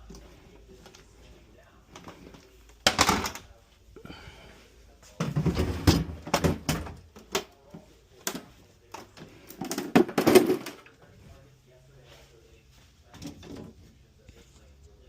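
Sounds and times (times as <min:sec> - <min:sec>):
hard parts knocking and rattling: 0:02.8 - 0:03.4, 0:05.2 - 0:07.5, 0:09.5 - 0:10.9.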